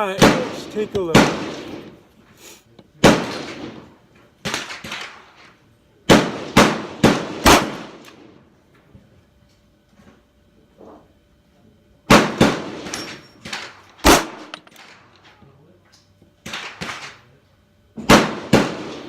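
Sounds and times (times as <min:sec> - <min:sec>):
pistol shots: 0:00.2 - 0:02.0, 0:03.0 - 0:05.3, 0:06.1 - 0:08.2, 0:12.1 - 0:15.0, 0:16.4 - 0:17.2, 0:18.0 - 0:19.0.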